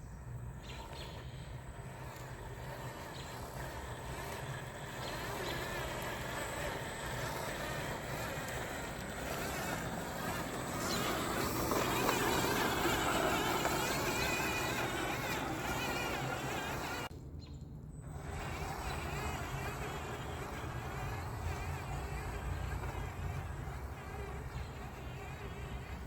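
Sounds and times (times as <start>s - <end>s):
rc truck motor whirring: 0.0s - 17.1s, 18.0s - 26.0s.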